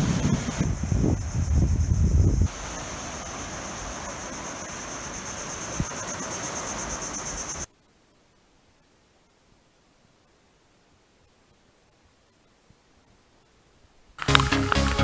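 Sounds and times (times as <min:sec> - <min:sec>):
insects trilling: 0:00.0 - 0:07.7
steady hiss: 0:00.0 - 0:15.0.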